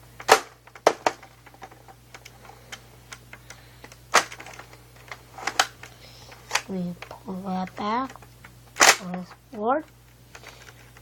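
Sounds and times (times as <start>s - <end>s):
plastic toy blaster clicks: 8.8s - 9.1s.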